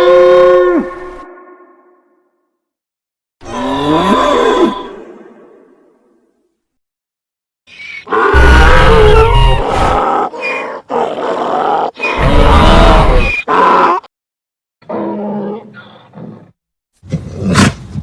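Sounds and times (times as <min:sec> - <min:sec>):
creature calls: 0:08.0 - 0:14.1
sharp creature cry: 0:08.0 - 0:14.1.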